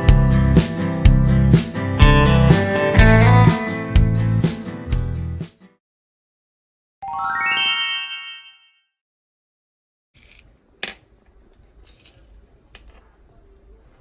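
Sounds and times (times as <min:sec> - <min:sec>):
rising chime notes: 0:07.0 - 0:08.8.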